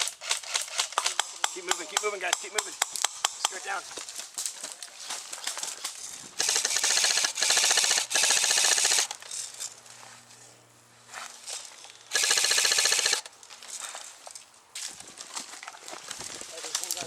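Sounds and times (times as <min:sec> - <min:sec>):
airsoft gun firing bursts: 0:00.0 - 0:03.6, 0:06.4 - 0:09.1, 0:12.1 - 0:13.3.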